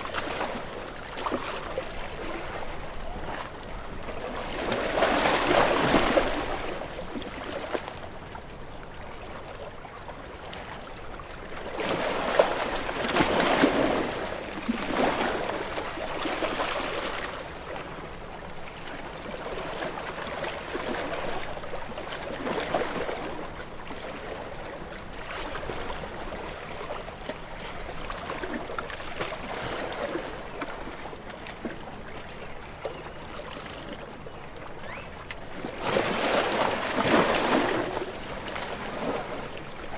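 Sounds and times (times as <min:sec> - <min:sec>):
waves breaking on rocks: 0:35.6 - 0:39.9.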